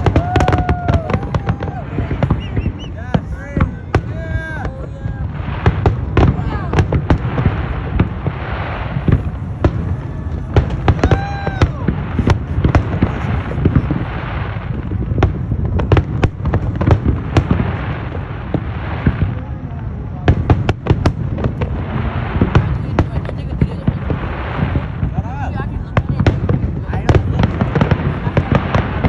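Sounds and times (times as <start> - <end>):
firework whistle: 0.0 - 19.4
fireworks bangs and crackling bursts: 0.0 - 29.0
low booming: 0.0 - 29.0.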